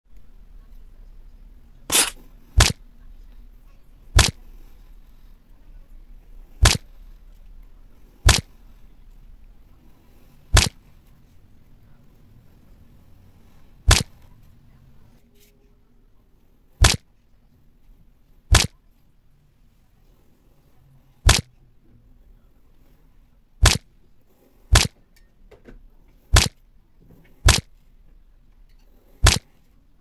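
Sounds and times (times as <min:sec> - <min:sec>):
blade cutting kinetic sand: 0:01.9 - 0:02.8, 0:04.2 - 0:04.4, 0:06.6 - 0:06.9, 0:08.2 - 0:08.5, 0:10.5 - 0:10.8, 0:13.9 - 0:14.2, 0:16.8 - 0:17.0, 0:18.5 - 0:18.7, 0:21.3 - 0:21.5, 0:23.6 - 0:23.8, 0:24.7 - 0:25.0, 0:26.3 - 0:26.6, 0:27.4 - 0:27.7, 0:29.1 - 0:29.6.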